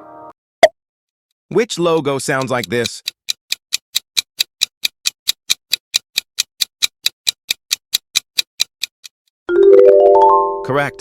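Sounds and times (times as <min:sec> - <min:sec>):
clock ticking: 0:01.6 - 0:09.2.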